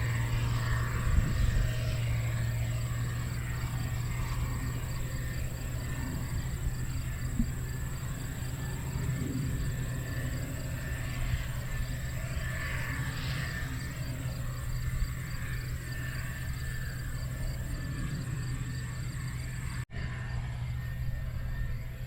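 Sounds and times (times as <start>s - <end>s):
combine harvester engine hum: 0.0s - 22.0s.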